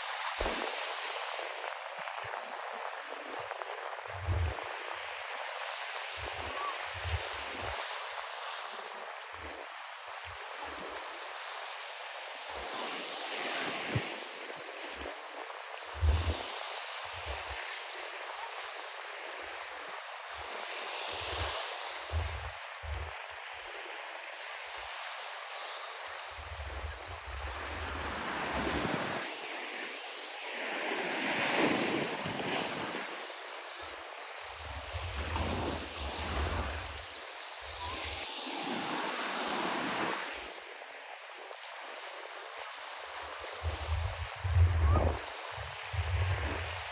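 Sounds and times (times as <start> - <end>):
surf washing on shore: 0.0 - 46.9
wind buffeting microphone: 22.1 - 23.1, 43.5 - 46.9
wave breaking: 43.6 - 46.9.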